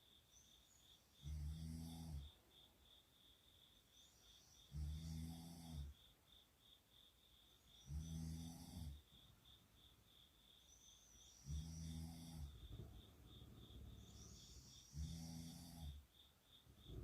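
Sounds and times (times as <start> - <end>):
person snoring softly: 1.2 - 2.4, 4.7 - 6.0, 7.8 - 9.1, 11.4 - 12.8, 14.0 - 16.1.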